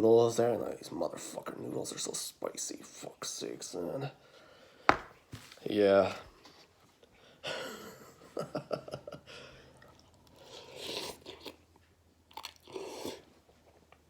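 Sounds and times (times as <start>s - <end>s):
person chewing noodles: 9.6s - 13.8s.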